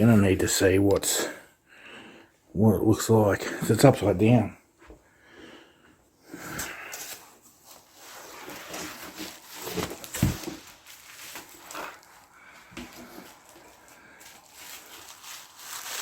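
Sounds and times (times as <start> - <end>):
cardboard rustling: 6.9 - 16.0.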